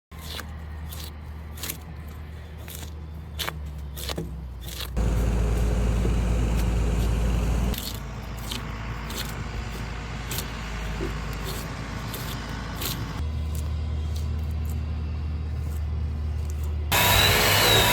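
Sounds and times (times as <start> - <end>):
low steady hum: 4.4 - 17.4
power tool running: 5.0 - 7.8, 16.9 - 17.9.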